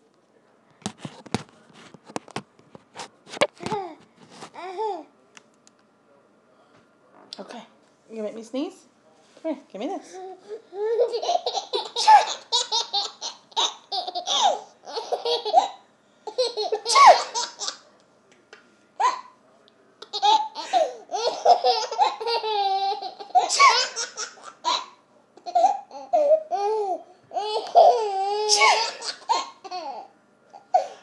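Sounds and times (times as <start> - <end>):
baby laughing: 10.2 - 17.8, 20.0 - 31.0.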